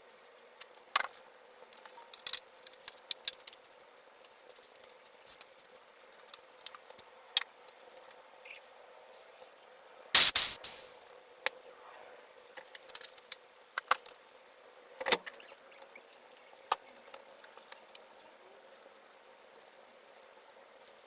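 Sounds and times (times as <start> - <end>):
small objects clicking and tapping: 10.2 - 11.0.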